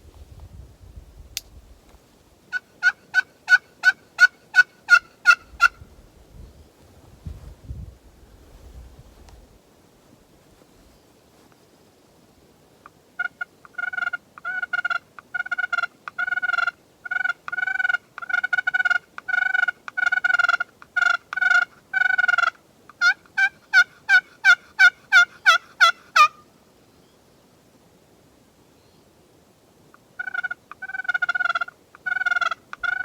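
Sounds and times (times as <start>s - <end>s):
turkey call yelps: 2.5s - 5.8s, 13.2s - 26.5s, 30.2s - 33.0s.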